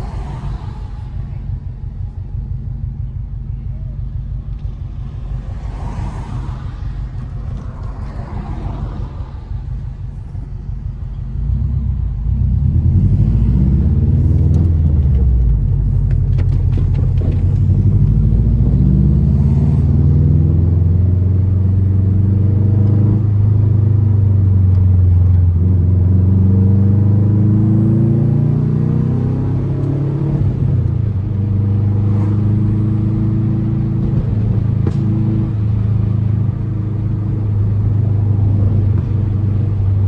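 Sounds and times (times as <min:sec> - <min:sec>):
car engine revving through gears: 0:11.4 - 0:40.0.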